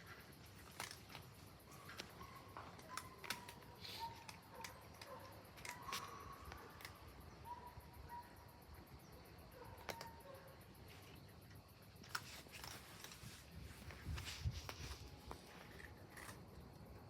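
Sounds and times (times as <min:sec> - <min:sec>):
cats chewing food: 0:00.0 - 0:07.2, 0:10.8 - 0:17.0.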